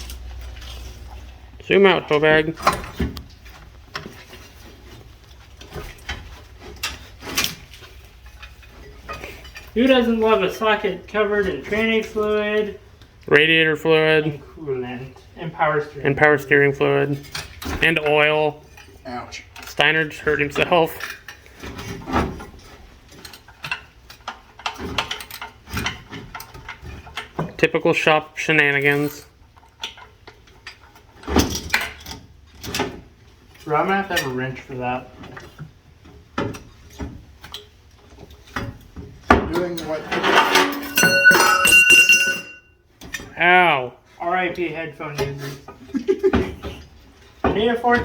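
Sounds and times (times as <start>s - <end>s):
hand tools clicking and knocking: 36.4s - 43.3s.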